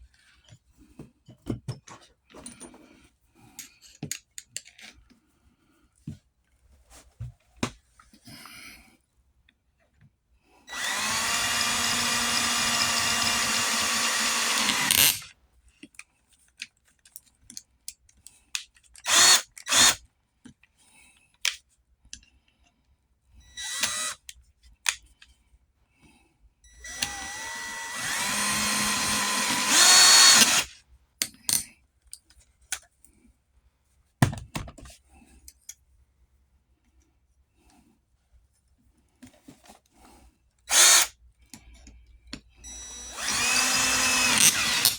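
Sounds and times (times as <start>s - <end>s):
power drill running: 10.7s - 15.3s, 19.1s - 20.0s, 23.6s - 24.2s, 26.8s - 30.7s, 40.7s - 41.1s, 42.6s - 44.9s.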